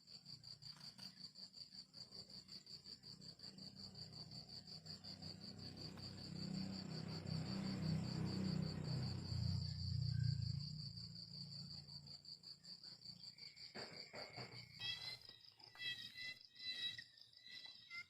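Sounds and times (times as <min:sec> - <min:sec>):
cricket chirping: 0:00.0 - 0:18.0.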